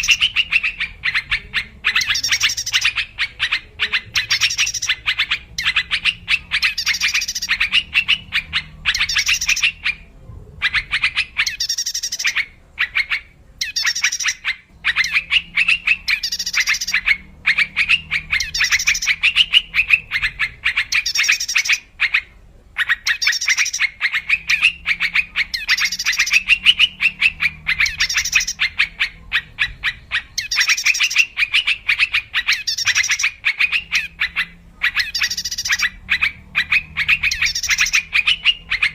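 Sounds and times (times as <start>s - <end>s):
bulbul chattering song: 0.0s - 38.9s.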